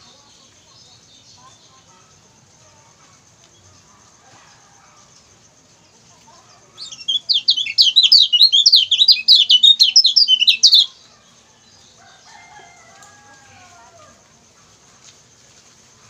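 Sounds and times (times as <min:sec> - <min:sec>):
bird chirping high: 0:06.8 - 0:11.0.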